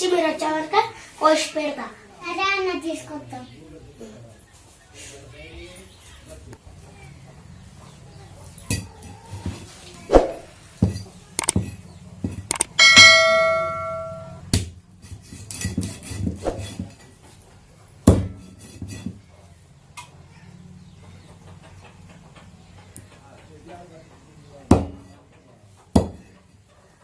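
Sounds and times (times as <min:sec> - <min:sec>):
struck metal ringing: 0:12.7 - 0:14.5.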